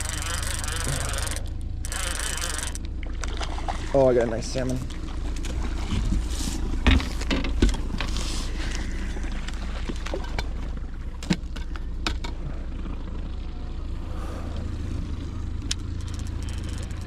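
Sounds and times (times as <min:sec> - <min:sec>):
knocks and clicks of gear: 0:00.0 - 0:03.5, 0:04.7 - 0:12.4, 0:15.6 - 0:17.0
boat motor running: 0:00.0 - 0:17.0.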